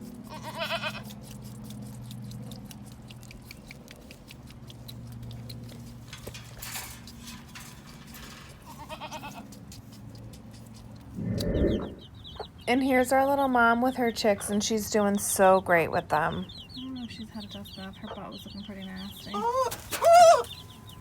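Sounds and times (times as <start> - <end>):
goats bleating: 0.3 - 1.1, 8.6 - 9.5
steady low hum: 9.3 - 13.7.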